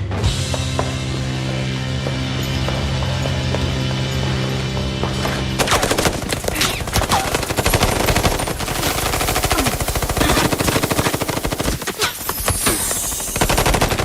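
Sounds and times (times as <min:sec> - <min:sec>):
musical drone: 0:00.0 - 0:06.2
rapid automatic gunfire: 0:05.6 - 0:14.0.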